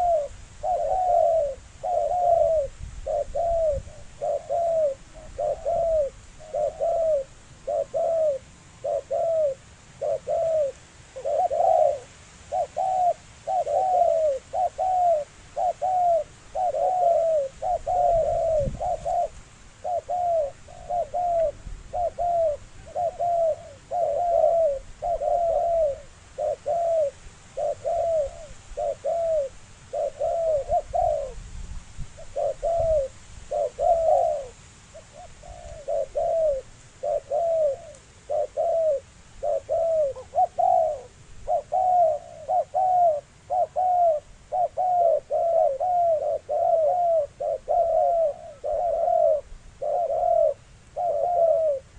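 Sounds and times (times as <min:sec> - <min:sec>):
dove cooing: 0:00.0 - 0:31.4, 0:32.2 - 0:51.9.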